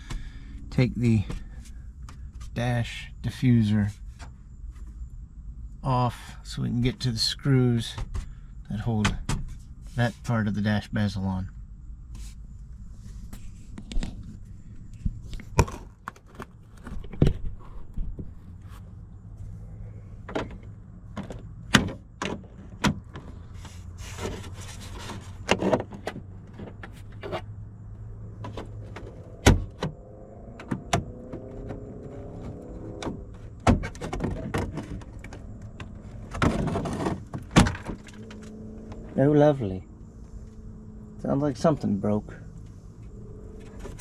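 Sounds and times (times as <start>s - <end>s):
steady low hum: 0.0s - 22.2s, 23.0s - 44.0s
plastic creaking: 15.3s - 18.4s, 30.6s - 39.2s.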